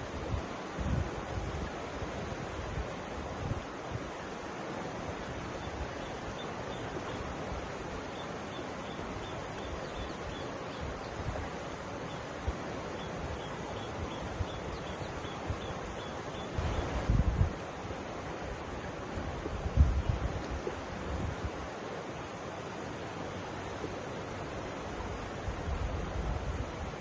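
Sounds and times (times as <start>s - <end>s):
river flowing: 0.0s - 27.0s
wind buffeting microphone: 16.6s - 17.6s, 19.1s - 21.6s.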